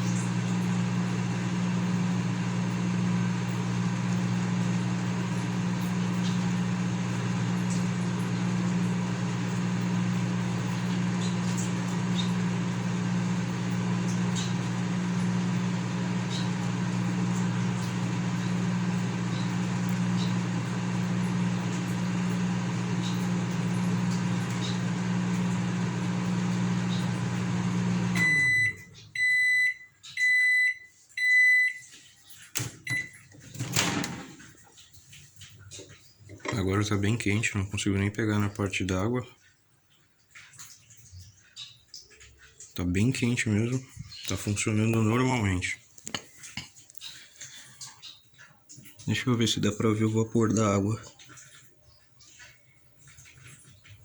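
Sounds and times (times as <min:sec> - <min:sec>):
microwave oven humming: 0:00.0 - 0:34.8.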